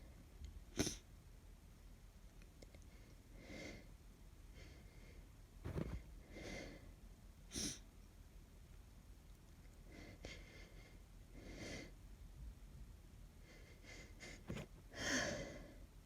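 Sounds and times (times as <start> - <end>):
woman breathing in heavily: 13.4 - 15.9.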